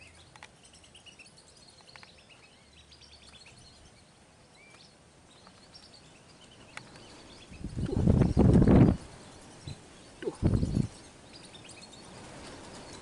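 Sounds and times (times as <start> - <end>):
small birds chirping: 0.0 - 13.0
faint wind noise: 1.7 - 13.0
wind buffeting microphone: 7.2 - 11.0.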